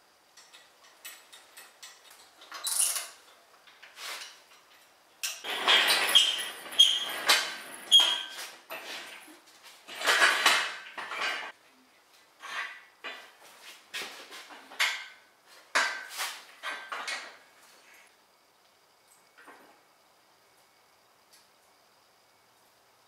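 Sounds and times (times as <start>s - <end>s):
metal tools clinking: 4.5s - 9.3s.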